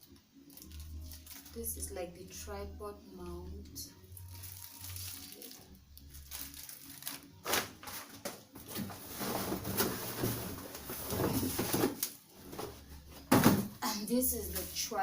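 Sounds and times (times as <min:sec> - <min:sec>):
plastic packaging crinkling: 0:00.4 - 0:01.9, 0:04.2 - 0:12.2, 0:14.4 - 0:15.0.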